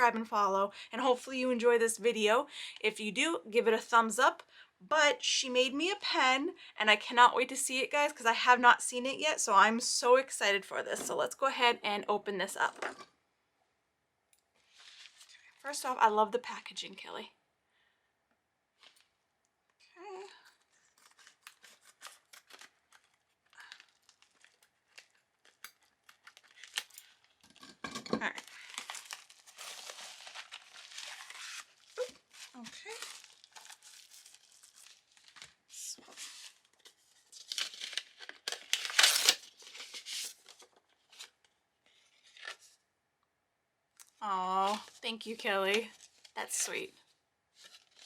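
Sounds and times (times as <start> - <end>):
gift packaging crinkling: 20.4 - 42.8, 44.5 - 46.7, 47.5 - 48.0.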